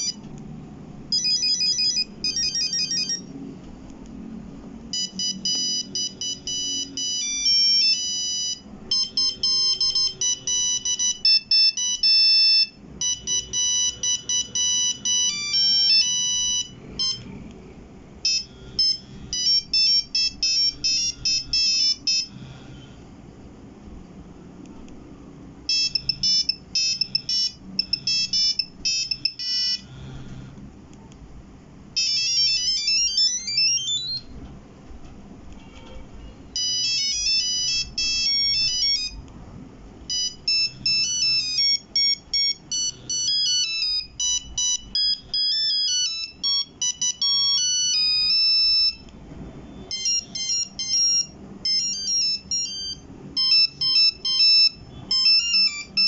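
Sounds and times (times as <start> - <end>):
monophonic phone ringtone melodies: 0.0 - 0.2, 1.1 - 3.4, 4.9 - 17.3, 18.2 - 22.5, 25.6 - 29.9, 31.9 - 34.4, 36.5 - 39.2, 40.0 - 49.1, 49.9 - 56.0.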